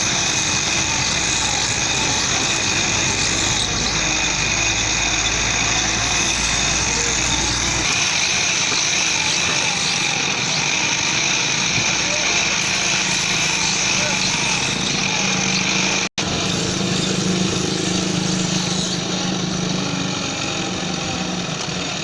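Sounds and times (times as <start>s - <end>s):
sharpening machine whine: 0.0s - 22.0s.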